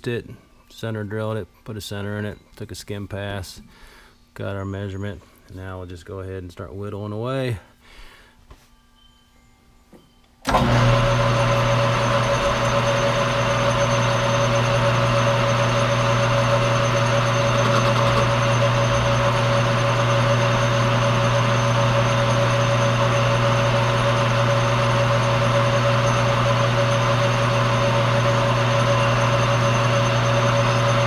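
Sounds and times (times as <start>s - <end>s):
lathe running: 10.5s - 31.0s.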